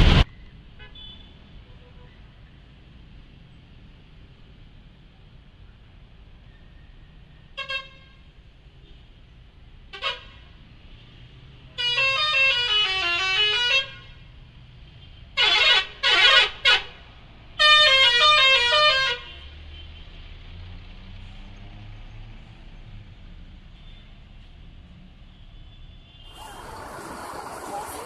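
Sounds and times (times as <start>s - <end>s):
musical bus horn: 11.8s - 14.1s, 15.4s - 16.9s, 17.6s - 19.3s.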